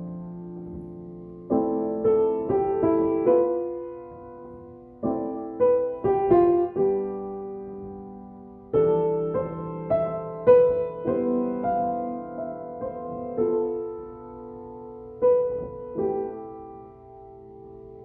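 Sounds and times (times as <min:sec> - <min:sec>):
slow piano playing: 0:00.0 - 0:18.0.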